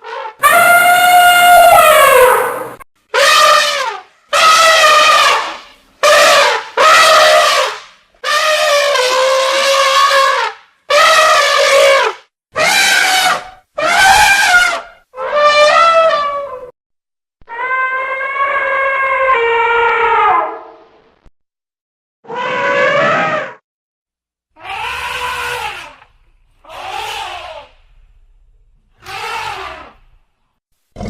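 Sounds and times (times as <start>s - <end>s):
elephant trumpeting: 0.0s - 16.7s, 24.6s - 27.8s, 29.0s - 30.0s.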